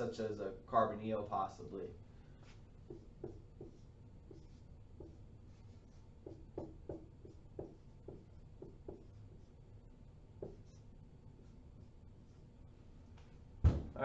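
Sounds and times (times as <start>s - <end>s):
low room hum: 0.0s - 14.0s
pen scratching on paper: 2.8s - 9.6s, 10.4s - 12.4s.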